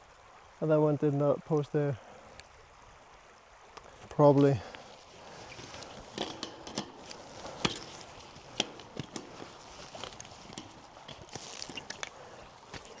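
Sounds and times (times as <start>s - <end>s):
clicks and knocks on wire fence: 5.2s - 13.0s.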